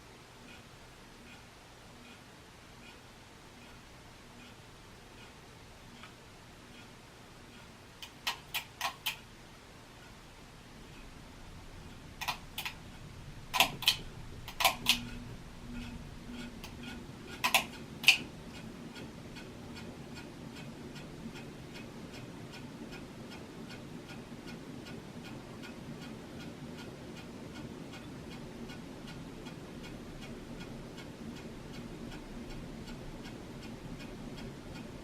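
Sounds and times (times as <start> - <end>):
ceiling fan motor hum: 0.0 - 35.0
loud sharp clicks: 8.0 - 9.3, 12.2 - 12.8, 13.5 - 15.2, 16.6 - 18.3.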